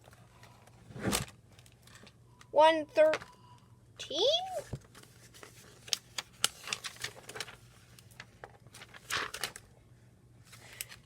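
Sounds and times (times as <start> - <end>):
pages rustling: 4.7 - 9.7.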